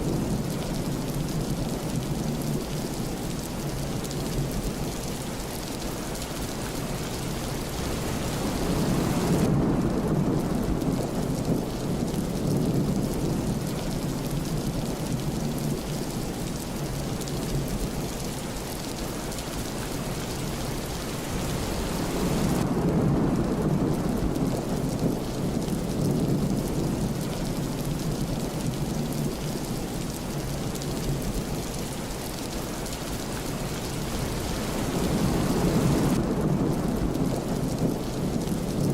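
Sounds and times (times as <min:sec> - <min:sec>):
steady rain falling: 0:00.0 - 0:38.9
thunder rumbling: 0:07.6 - 0:15.8, 0:20.5 - 0:32.9, 0:33.6 - 0:38.9.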